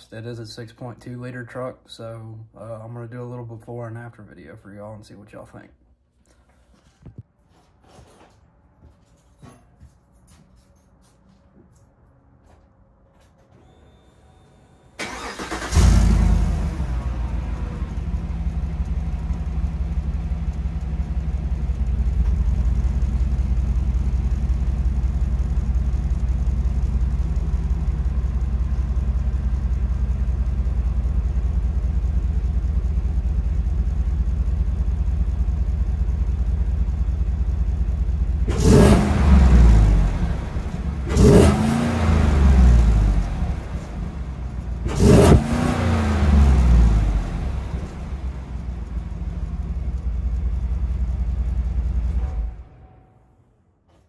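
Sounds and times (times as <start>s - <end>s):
truck engine idling and revving: 10.6s - 53.0s.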